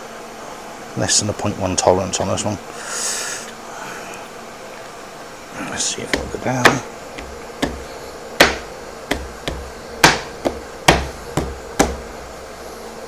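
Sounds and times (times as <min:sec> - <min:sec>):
sharp knocks on wood joint: 0:06.1 - 0:12.6.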